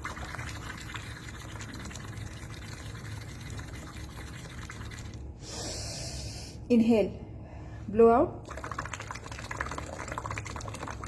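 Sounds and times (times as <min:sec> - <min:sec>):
air bubbling through straw in water: 0:00.0 - 0:05.3, 0:08.4 - 0:11.0.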